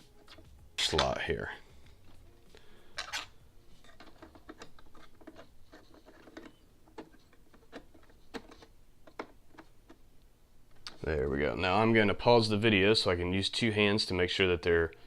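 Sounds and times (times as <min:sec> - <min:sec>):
small clicks and scrapes: 0:03.0 - 0:10.0.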